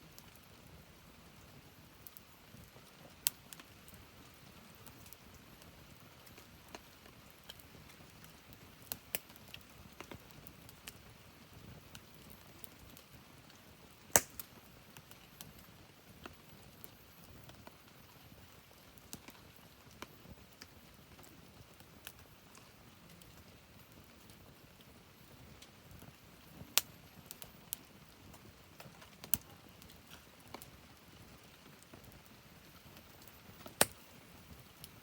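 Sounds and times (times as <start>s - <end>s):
faint steady hiss: 0.0s - 35.0s
wood fire crackling: 0.1s - 35.0s
fire pops and snaps: 1.4s - 35.0s.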